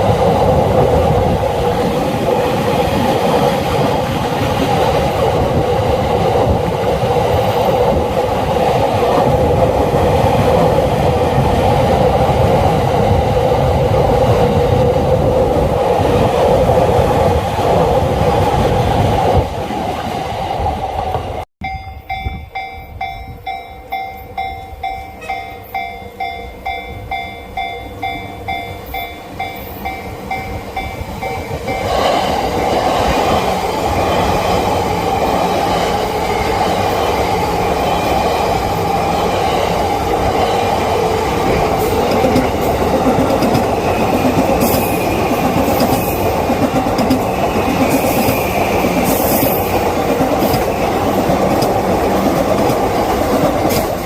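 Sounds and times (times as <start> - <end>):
level crossing warning bell ringing: 21.6 - 32.0
train wheels clattering over rails: 31.3 - 54.0.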